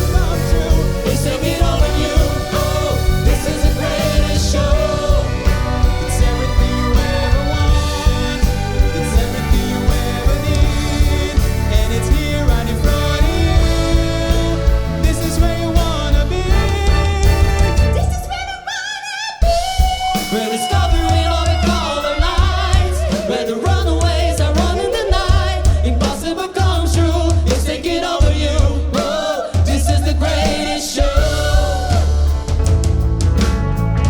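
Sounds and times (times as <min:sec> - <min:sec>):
heavy pulsing bass beat: 0:00.0 - 0:18.3
orchestra and band accompaniment: 0:00.0 - 0:18.6, 0:30.4 - 0:34.0
person singing: 0:00.0 - 0:32.5.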